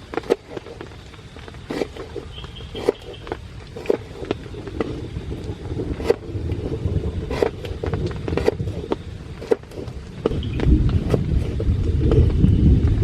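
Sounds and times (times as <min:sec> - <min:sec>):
steady low rumble: 0:00.0 - 0:13.0
raindrops tapping on shelter: 0:09.8 - 0:13.0.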